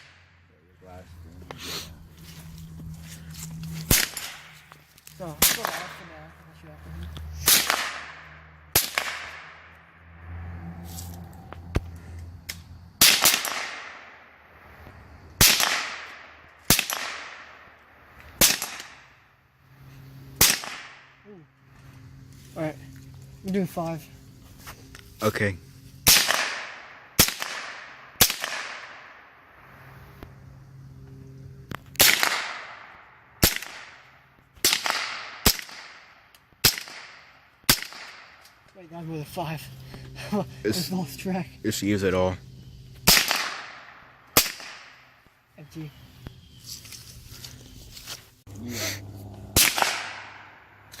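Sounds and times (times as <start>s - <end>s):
rifle shots with echo: 3.9s - 4.5s, 5.4s - 6.1s, 7.5s - 9.7s, 13.0s - 14.2s, 15.4s - 17.7s, 18.4s - 19.0s, 20.4s - 21.0s, 26.1s - 29.3s, 32.0s - 34.0s, 34.6s - 38.4s, 43.1s - 45.1s, 49.6s - 50.7s.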